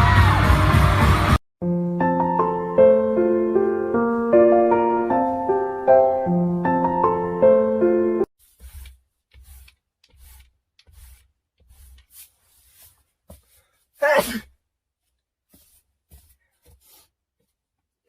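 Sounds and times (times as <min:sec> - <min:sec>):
person sneezing: 0:14.0 - 0:14.6.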